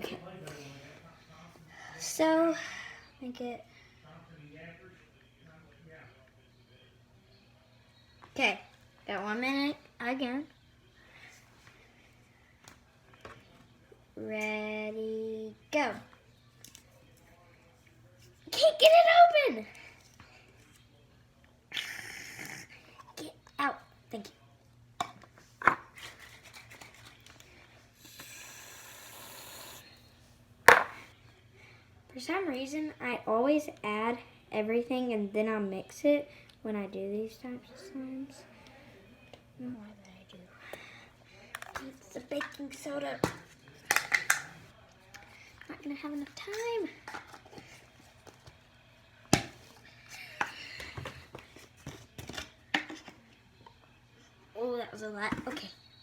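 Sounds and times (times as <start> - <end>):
aerosol can spraying foam: 28.1 - 29.8
object set down on table: 30.7 - 31.0.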